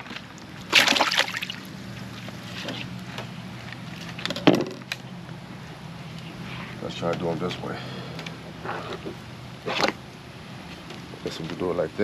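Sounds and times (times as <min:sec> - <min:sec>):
low steady hum: 0:00.0 - 0:12.0
meat splashing into water: 0:00.7 - 0:01.7.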